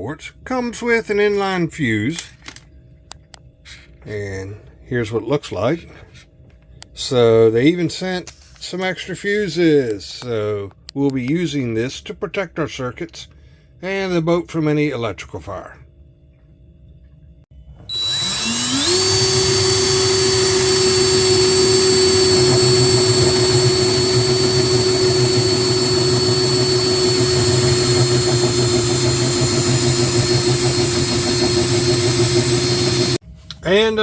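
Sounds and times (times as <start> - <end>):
small electric motor spinning: 17.9 - 33.2.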